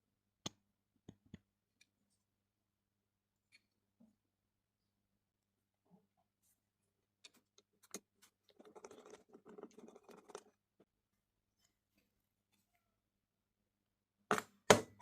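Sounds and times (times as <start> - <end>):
faint scratching: 7.9 - 10.6.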